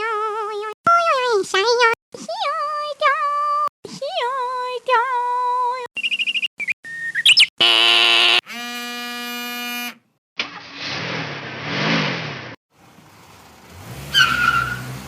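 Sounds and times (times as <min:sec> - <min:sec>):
held buzzing tones: 0:07.6 - 0:10.0.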